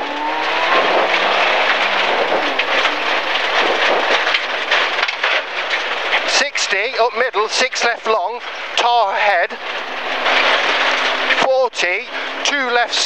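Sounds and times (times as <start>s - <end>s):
car engine revving: 0.0s - 6.3s, 9.5s - 11.5s
gravel hitting car underbody: 0.2s - 7.8s.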